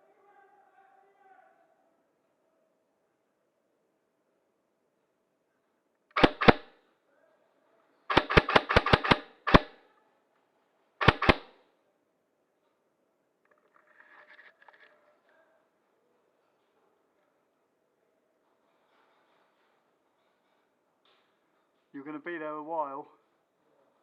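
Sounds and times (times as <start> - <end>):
airsoft gun shots: 6.2 - 6.7, 8.1 - 9.8, 11.0 - 11.6.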